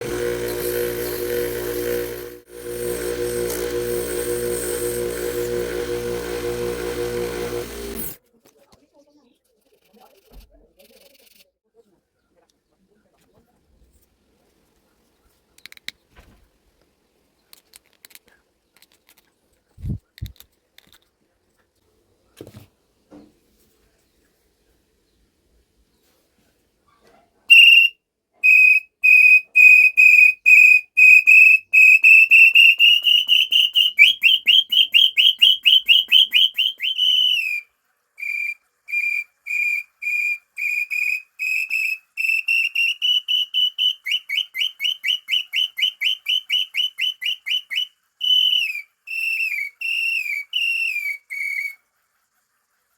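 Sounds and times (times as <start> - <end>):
bird call whistle notes: 27.5 - 51.8.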